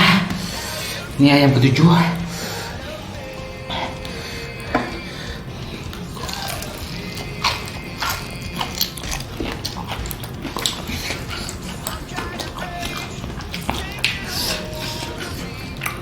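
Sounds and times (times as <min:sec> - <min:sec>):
crunching of fried chicken: 0:00.0 - 0:16.0.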